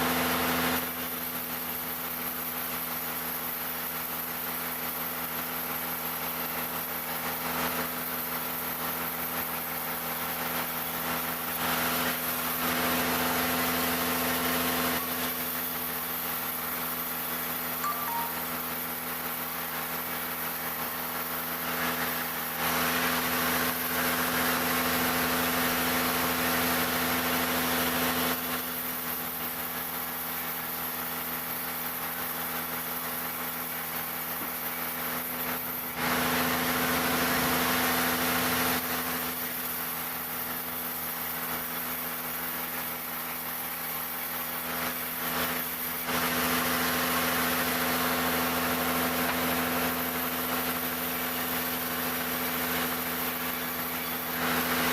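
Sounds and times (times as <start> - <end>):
sawmill engine running: 10.1 - 25.6, 29.1 - 54.9
saw cutting timber: 47.7 - 54.9.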